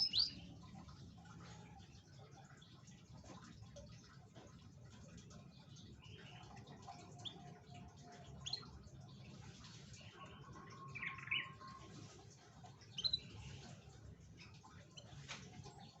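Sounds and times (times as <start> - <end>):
canary chirps: 0.0 - 0.6, 5.8 - 15.9.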